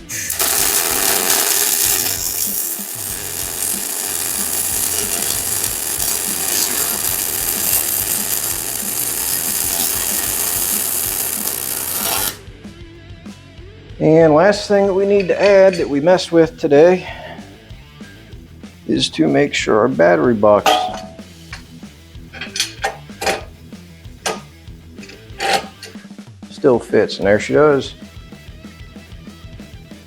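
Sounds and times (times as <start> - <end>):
welding arc crackling: 0.0 - 12.4.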